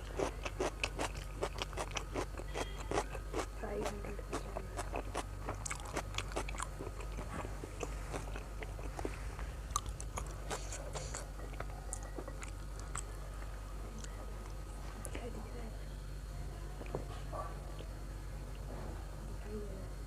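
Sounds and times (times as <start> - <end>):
person chewing crunchy food: 0.0 - 15.2
low hum: 0.0 - 20.0.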